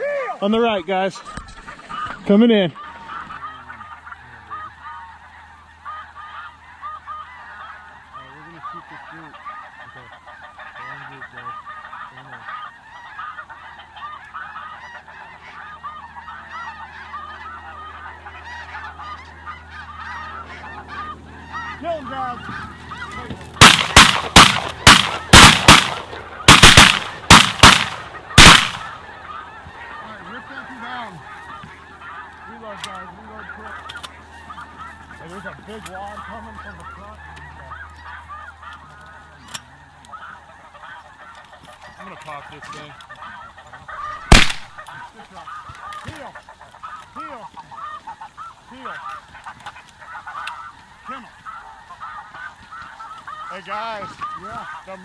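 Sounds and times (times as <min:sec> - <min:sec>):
snow geese calling: 0:00.0 - 0:55.0
shotgun shots: 0:23.6 - 0:28.9, 0:44.3 - 0:44.8.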